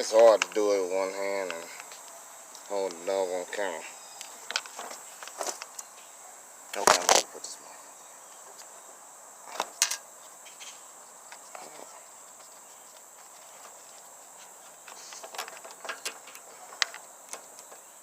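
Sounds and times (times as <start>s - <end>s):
steady high-pitched whine: 0.0s - 18.0s
small metal clicks and knocks: 9.5s - 11.6s, 14.8s - 17.9s.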